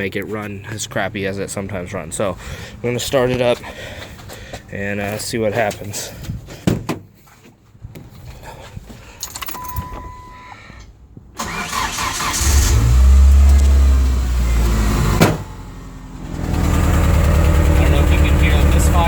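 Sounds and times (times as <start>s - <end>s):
keys rattling: 9.0s - 10.4s
engine cranking and running: 11.4s - 19.0s.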